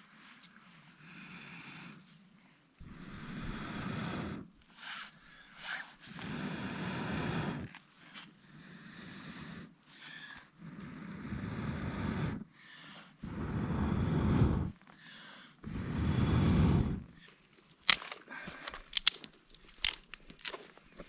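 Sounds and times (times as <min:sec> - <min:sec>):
breaths blown onto embers: 0:15.6 - 0:20.6
fire crackling and snapping: 0:17.5 - 0:21.0.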